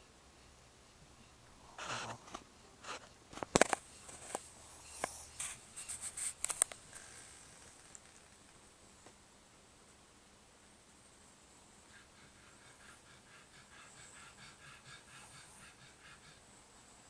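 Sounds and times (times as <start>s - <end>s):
scraping rustles: 1.8s - 8.6s.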